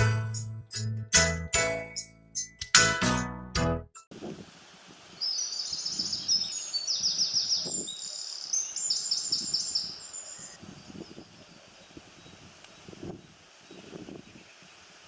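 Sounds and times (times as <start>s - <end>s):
small bird trilling: 5.2s - 11.3s.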